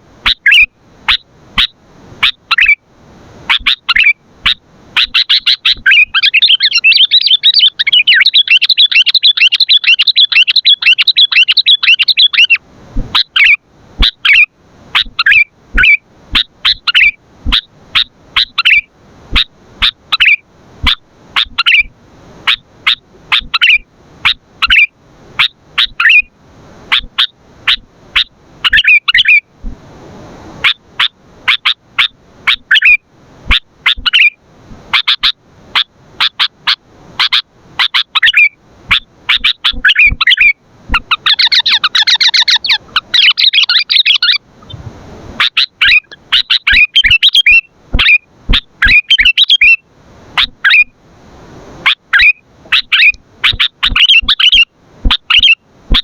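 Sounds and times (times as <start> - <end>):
bird chattering: 0.2 - 2.8, 3.5 - 26.3, 26.9 - 29.4, 30.6 - 34.3, 35.0 - 44.8, 45.4 - 49.8, 51.9 - 56.0
bird chirping sharply: 3.5 - 12.6, 13.2 - 21.9, 25.8 - 26.3, 37.2 - 44.8, 45.4 - 48.2, 48.8 - 49.8, 52.1 - 54.7.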